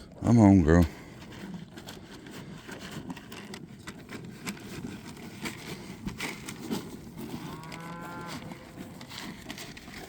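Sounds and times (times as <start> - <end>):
crunching and knocking: 1.6 - 10.0
cow mooing: 7.4 - 8.9.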